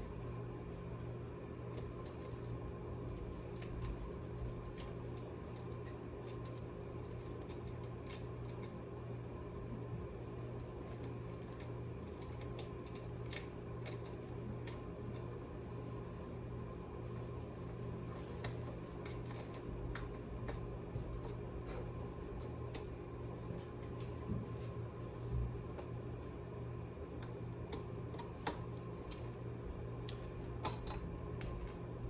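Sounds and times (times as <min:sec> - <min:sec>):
steady low hum: 0:00.0 - 0:32.0
light clicks of small parts: 0:03.4 - 0:08.8, 0:10.6 - 0:15.4.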